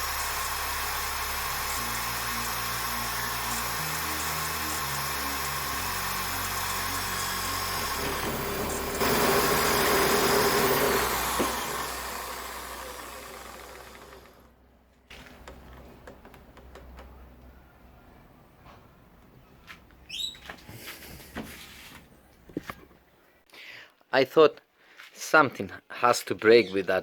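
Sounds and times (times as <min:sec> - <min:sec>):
tool cutting hard wood: 0:00.0 - 0:14.5
wood lathe running: 0:00.0 - 0:14.5
faint clicks and knocks: 0:15.1 - 0:17.5.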